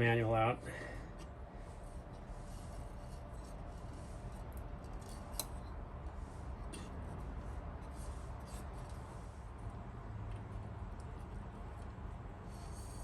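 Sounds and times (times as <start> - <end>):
low steady hum: 0.0 - 13.0
small parts scraping: 2.2 - 5.8, 12.4 - 13.0.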